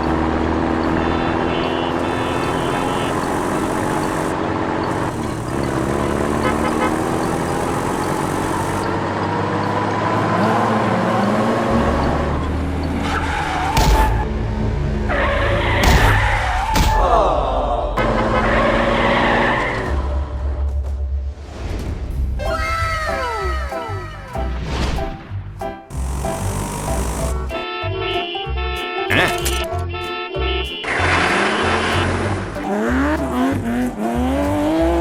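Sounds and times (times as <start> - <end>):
cartoon engines running: 0.0 - 9.6, 25.9 - 27.7
background music: 19.8 - 35.0.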